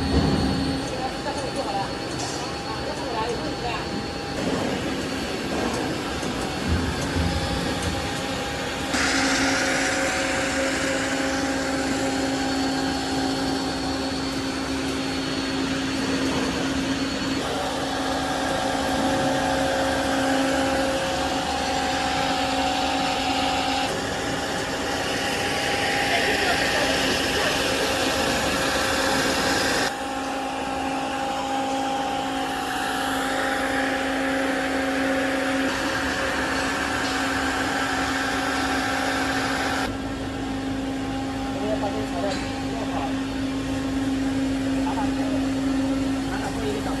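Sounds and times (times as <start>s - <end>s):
machine motor hum: 0.0s - 47.0s
machine hiss: 4.4s - 29.9s.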